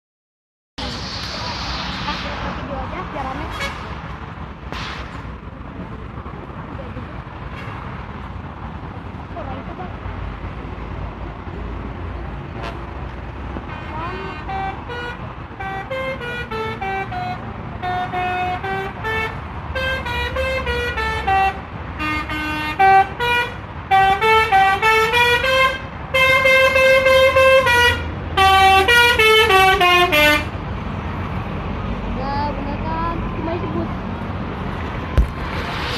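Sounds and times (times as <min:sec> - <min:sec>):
engine and traffic rumble: 0:00.8 - 0:35.9
melodic bus horn: 0:13.7 - 0:30.5.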